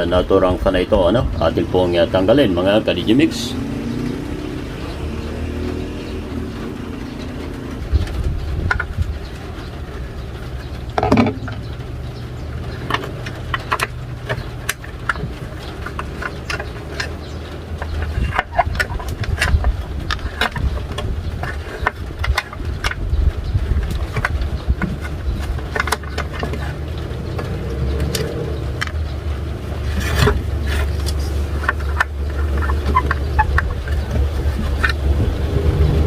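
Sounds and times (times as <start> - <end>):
hand tools clicking on metal parts: 12.7 - 29.1, 29.8 - 35.0.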